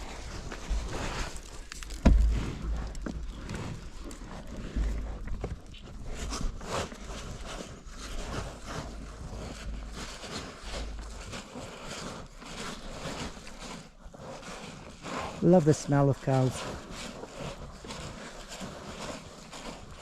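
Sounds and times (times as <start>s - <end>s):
wind rumbling on microphone: 0.0s - 12.6s
footsteps in snow: 6.6s - 20.0s.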